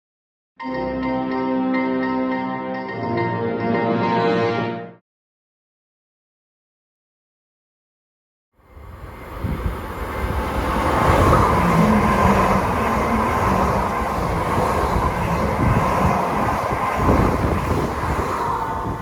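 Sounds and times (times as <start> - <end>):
train wheels rumbling on rails: 8.7 - 19.0.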